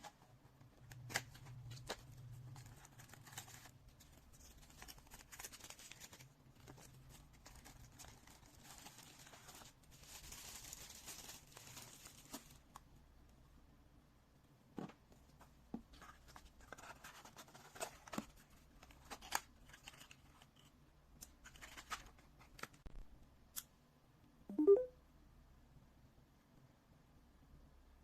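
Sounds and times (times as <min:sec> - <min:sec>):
packaging rustling and crinkling: 0:00.9 - 0:12.6.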